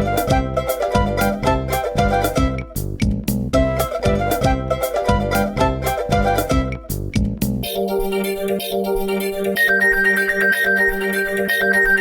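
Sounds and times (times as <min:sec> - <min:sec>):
phone ringtone melody: 0:07.7 - 0:12.0.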